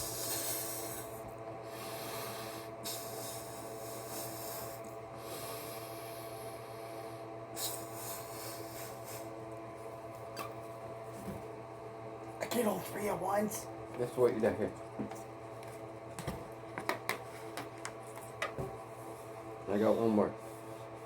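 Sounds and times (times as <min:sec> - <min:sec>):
breath blowing up balloons: 0:00.0 - 0:06.6, 0:07.6 - 0:09.3
steady hum: 0:00.0 - 0:21.0.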